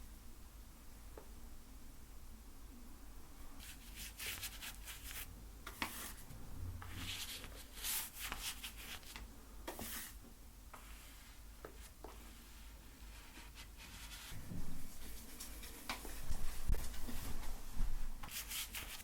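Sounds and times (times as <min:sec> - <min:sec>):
brush scrubbing on canvas: 0:03.6 - 0:06.2, 0:06.8 - 0:09.2, 0:09.8 - 0:10.2, 0:10.8 - 0:17.4, 0:18.2 - 0:19.0.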